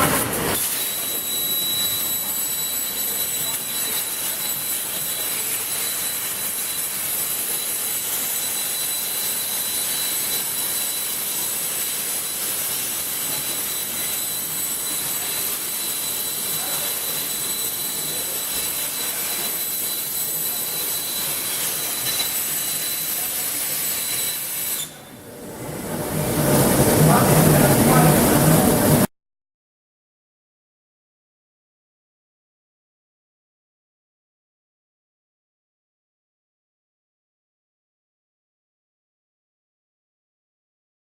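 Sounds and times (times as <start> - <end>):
plasma torch cutting metal: 0.0 - 25.0.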